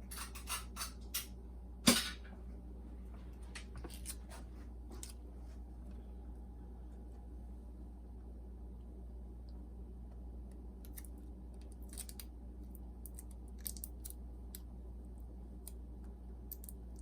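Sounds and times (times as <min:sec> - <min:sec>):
steady low hum: 0:00.0 - 0:17.0
small parts clicking and tapping: 0:16.5 - 0:17.0.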